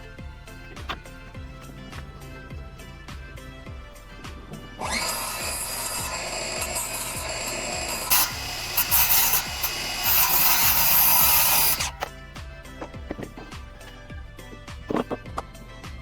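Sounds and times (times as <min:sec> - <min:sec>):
background music with beat: 0:00.0 - 0:16.0
power tool working wood: 0:04.3 - 0:12.2.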